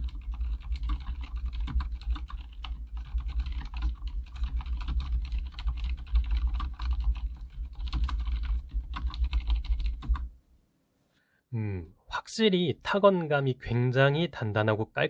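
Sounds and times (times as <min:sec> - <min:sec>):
mechanical keyboard typing: 0:00.0 - 0:10.3.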